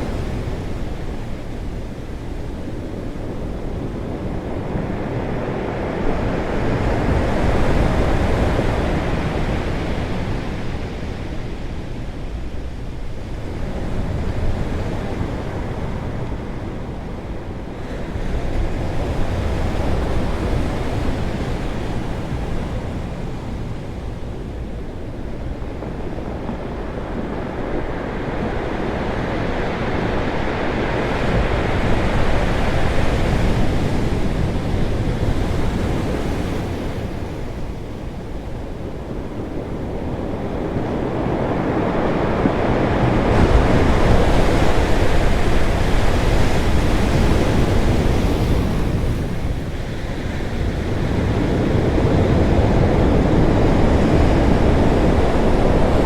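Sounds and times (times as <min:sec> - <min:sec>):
ocean waves crashing on rocks: 0:26.4 - 0:56.0.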